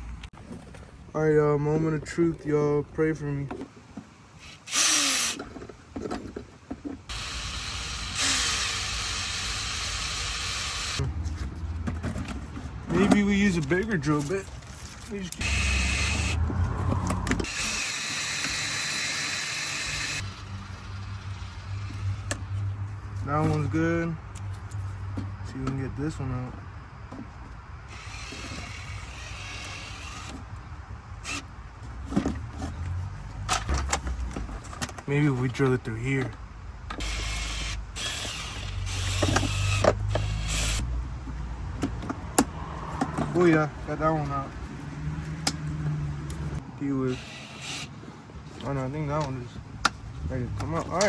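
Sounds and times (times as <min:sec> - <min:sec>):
power drill drilling: 0:04.4 - 0:05.4, 0:07.1 - 0:11.0, 0:15.4 - 0:16.4, 0:17.4 - 0:22.1, 0:27.9 - 0:30.4, 0:31.2 - 0:31.5, 0:37.0 - 0:40.8, 0:47.1 - 0:47.9.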